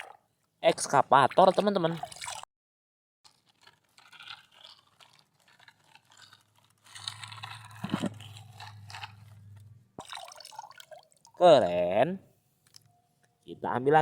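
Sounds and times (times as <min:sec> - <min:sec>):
mud scraping and scrubbing: 0:03.3 - 0:09.6.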